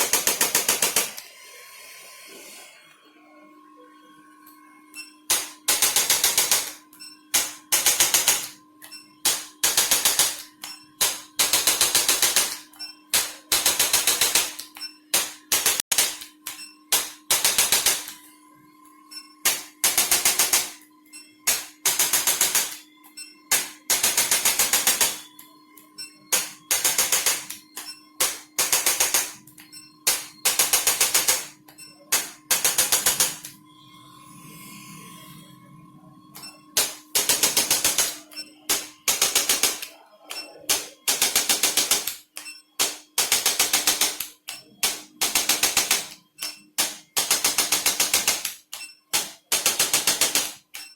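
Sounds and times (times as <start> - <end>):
fast mechanical clicking bursts: 0.0 - 1.3, 5.3 - 8.6, 9.2 - 18.2, 19.4 - 20.8, 21.4 - 22.8, 23.5 - 25.2, 26.3 - 33.5, 36.8 - 40.0, 40.7 - 50.9.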